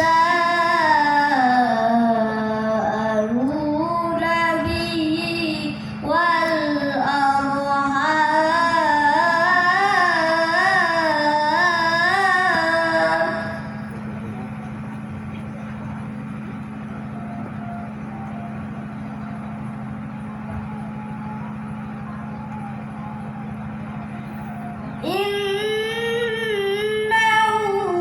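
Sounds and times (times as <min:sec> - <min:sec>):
woman chanting: 0:00.0 - 0:13.8, 0:25.0 - 0:28.0
steady low hum: 0:00.0 - 0:28.0.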